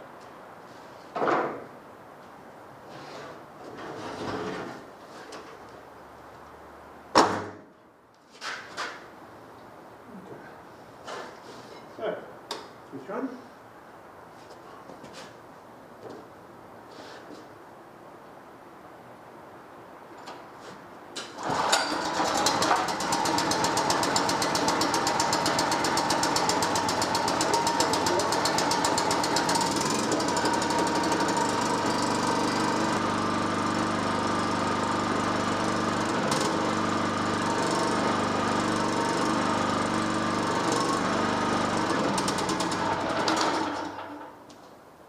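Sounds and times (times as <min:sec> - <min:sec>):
generator engine running: 0:21.4 - 0:44.3.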